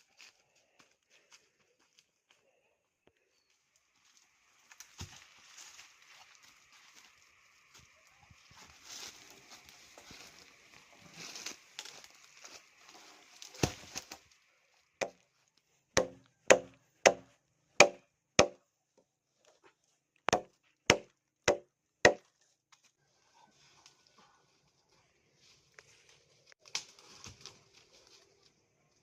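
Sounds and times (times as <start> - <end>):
chopping wood strikes: 13.5 - 14.2, 16.0 - 18.6, 20.3 - 22.3.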